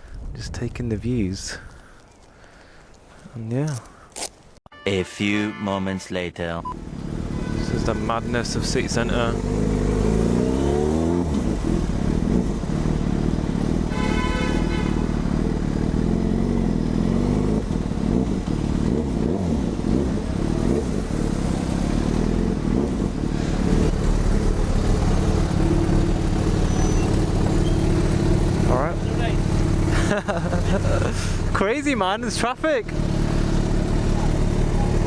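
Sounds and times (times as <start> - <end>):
brief higher tone: 4.7 - 6.8
motorcycle engine revving: 6.8 - 35.0.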